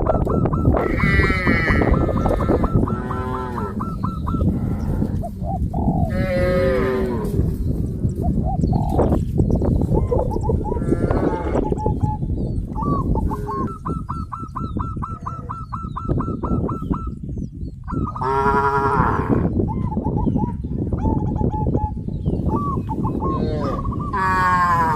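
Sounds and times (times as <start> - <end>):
steady low rumble: 0.0 - 18.2
cattle mooing: 0.8 - 3.8, 23.4 - 24.9.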